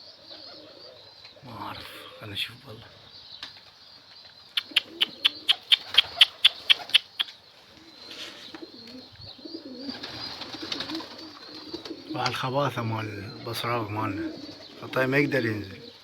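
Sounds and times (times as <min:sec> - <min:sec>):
pigeons cooing: 0:00.0 - 0:16.0
sharp clicks: 0:04.6 - 0:07.4.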